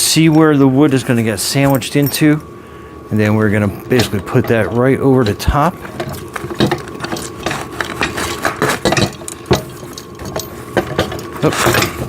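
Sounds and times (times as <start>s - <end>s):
machine parts knocking and clicking: 5.3s - 12.0s.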